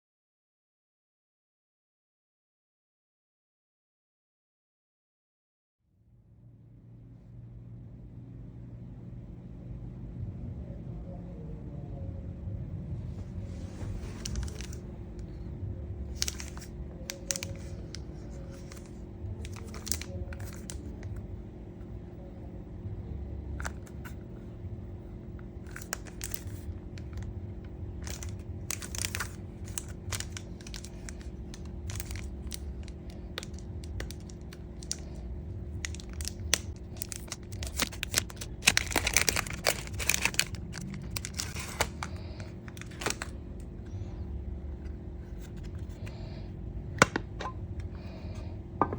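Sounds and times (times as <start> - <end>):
packaging crinkling and tearing: 13.9 - 21.2, 25.6 - 44.2.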